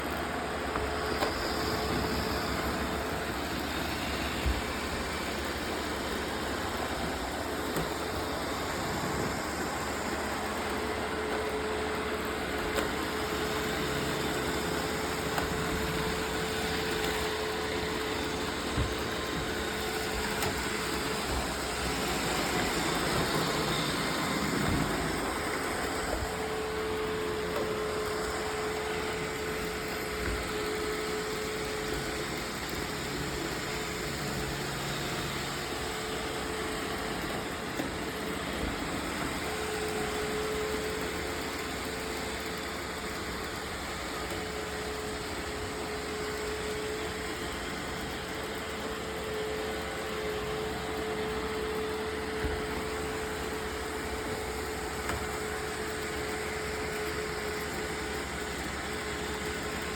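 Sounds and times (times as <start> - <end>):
robot vacuum motor and fan drone: 0.0 - 59.9.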